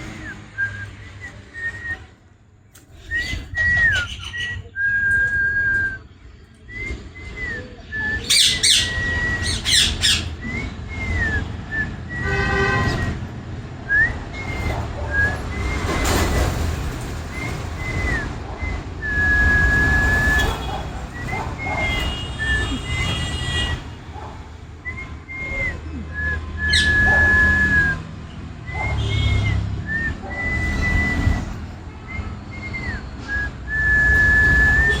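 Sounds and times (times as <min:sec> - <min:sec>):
parrot whistling: 0:03.0 - 0:06.0, 0:06.8 - 0:12.4, 0:24.8 - 0:28.0.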